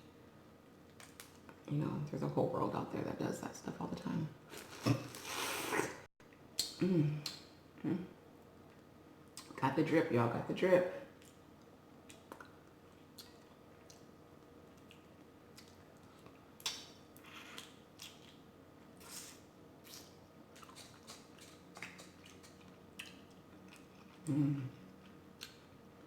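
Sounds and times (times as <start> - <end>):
low hummed vocal sound: 6.7 - 8.2, 24.1 - 25.1
wet chewing and smacking: 11.2 - 25.8.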